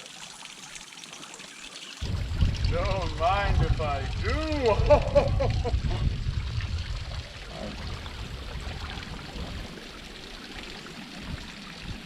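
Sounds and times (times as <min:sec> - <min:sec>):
spring water trickling: 0:00.0 - 0:12.0
low rumble: 0:02.0 - 0:09.7.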